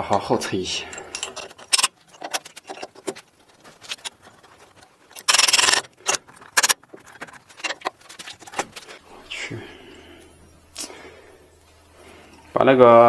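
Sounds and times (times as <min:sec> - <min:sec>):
metal tools clicking and clinking: 0:00.4 - 0:08.8
rapid metal rattling: 0:00.9 - 0:09.0.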